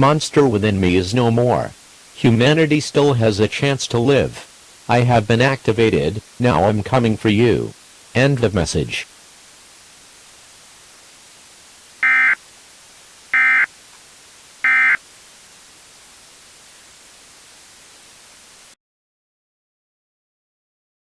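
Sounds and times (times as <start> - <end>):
steady hiss: 0.0 - 18.8
short digital data bursts: 12.0 - 12.4, 13.3 - 13.7, 14.6 - 15.0.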